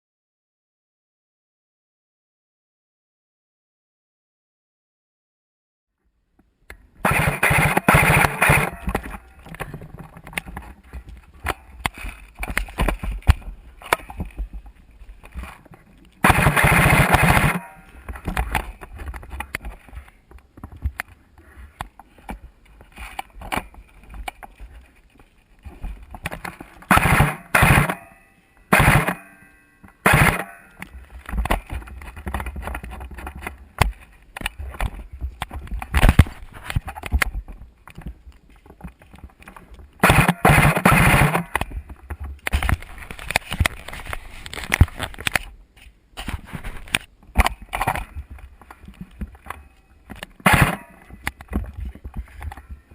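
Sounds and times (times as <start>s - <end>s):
clicks and handling noise: 6.4s - 52.9s
airsoft rifle firing bursts: 7.0s - 9.2s, 16.2s - 17.9s, 26.9s - 30.9s, 40.0s - 41.6s, 50.4s - 51.1s.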